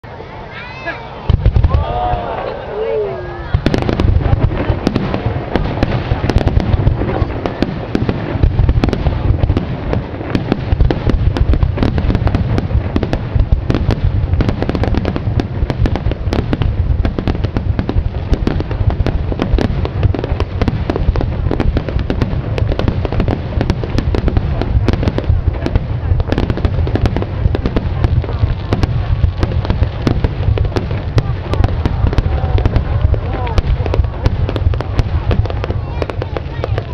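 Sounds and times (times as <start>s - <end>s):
fireworks bursts and crackles: 0.1s - 36.9s
heavy booming fireworks: 1.2s - 36.9s.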